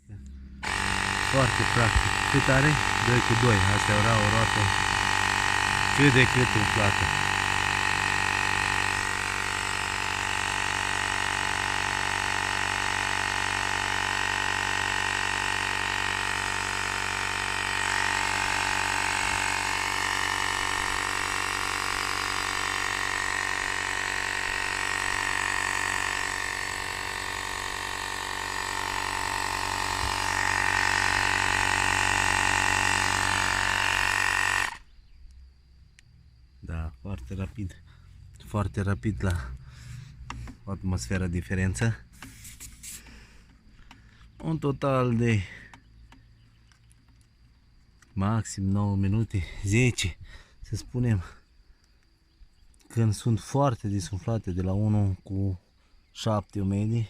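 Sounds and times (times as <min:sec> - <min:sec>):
air compressor motor buzzing: 0:00.0 - 0:35.1, 0:39.2 - 0:47.4.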